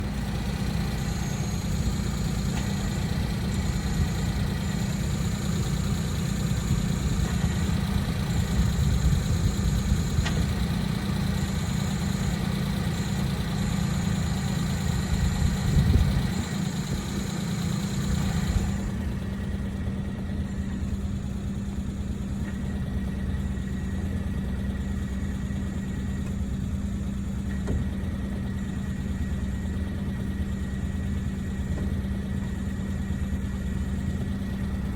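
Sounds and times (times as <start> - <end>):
car engine idling: 0.0 - 34.9.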